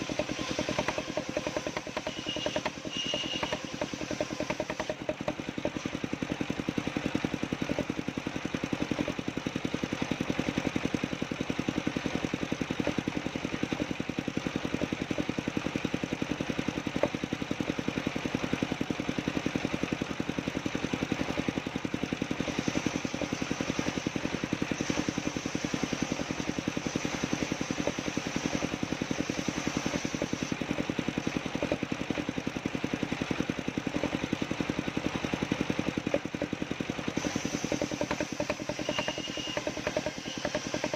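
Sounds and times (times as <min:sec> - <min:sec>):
sawmill engine running: 0:00.0 - 0:40.9.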